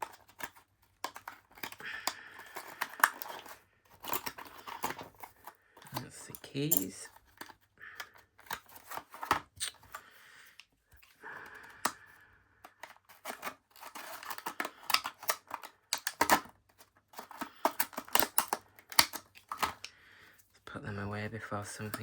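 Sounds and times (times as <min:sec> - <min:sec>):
plastic packaging clicks and snips: 0:00.0 - 0:10.0, 0:12.6 - 0:19.9
plastic crackling: 0:00.0 - 0:19.9, 0:21.6 - 0:22.0.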